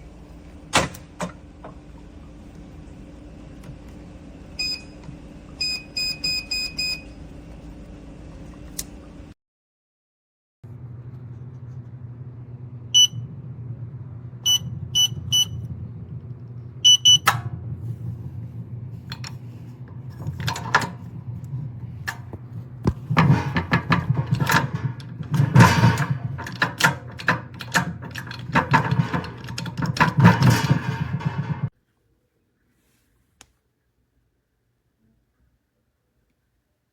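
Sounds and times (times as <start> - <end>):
low steady hum: 10.7 - 31.4
keypad beeps: 13.0 - 13.2, 14.5 - 15.6, 16.8 - 17.3
clattering and handling noise: 17.3 - 31.7.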